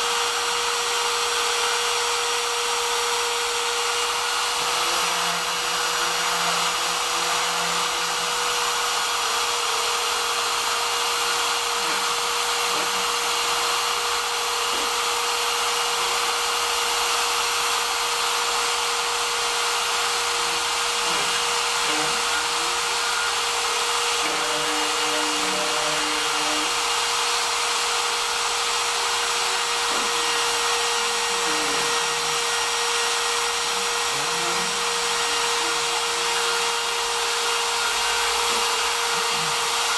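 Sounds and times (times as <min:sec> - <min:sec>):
router spindle whine: 0:00.0 - 0:39.9
axis motors gliding tones: 0:20.0 - 0:26.8, 0:29.0 - 0:39.9.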